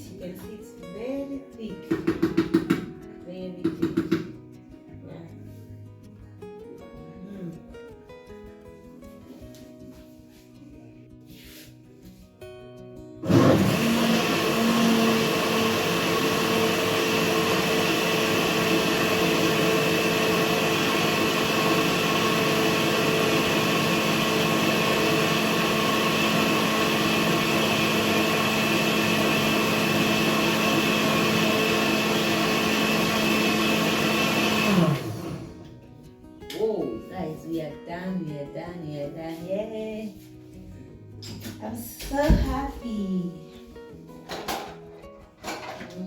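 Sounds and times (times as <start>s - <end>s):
blender motor running: 13.2s - 35.7s.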